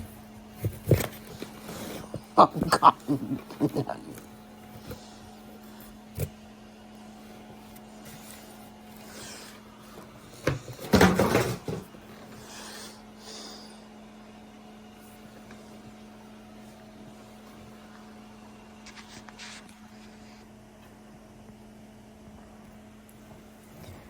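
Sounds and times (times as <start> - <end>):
steady low hum: 0.0 - 24.0
knocks and rustling: 10.0 - 12.0.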